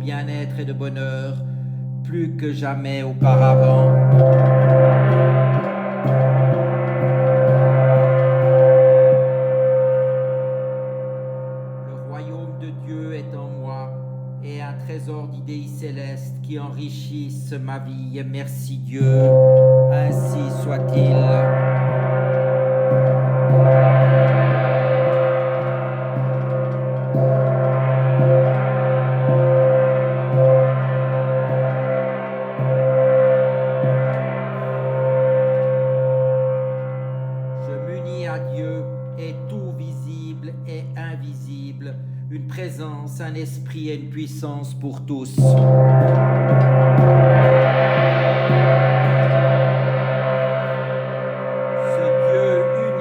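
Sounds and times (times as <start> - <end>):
gong ringing: 3.1 - 14.5, 18.9 - 41.1, 45.4 - 53.0.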